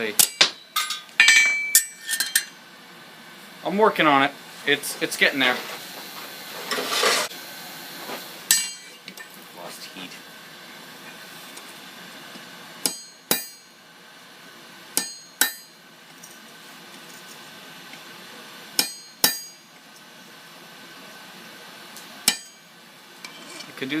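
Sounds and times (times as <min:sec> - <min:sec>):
hammer striking steel chisel: 0:12.8 - 0:13.7, 0:15.0 - 0:15.7, 0:18.8 - 0:19.6, 0:22.3 - 0:22.6.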